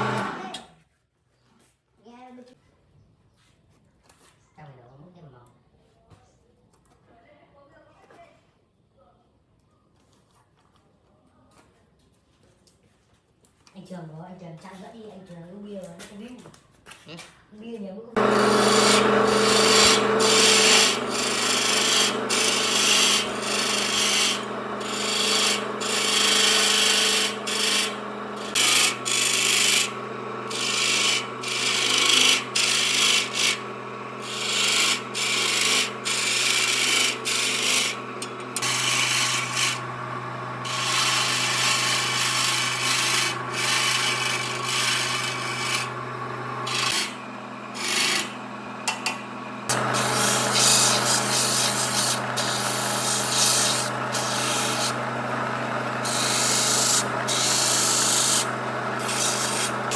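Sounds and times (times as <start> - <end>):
steady machine hum: 0.0 - 0.5, 18.2 - 59.9
wood being sanded by hand: 0.0 - 0.5, 18.2 - 59.9.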